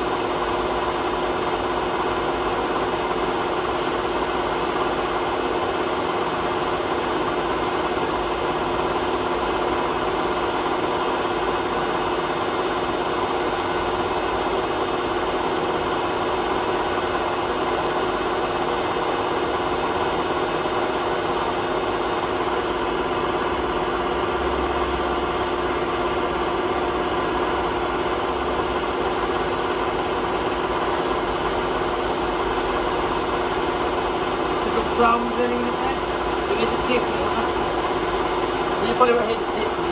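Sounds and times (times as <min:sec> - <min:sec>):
washing machine spinning: 0:00.0 - 0:39.9.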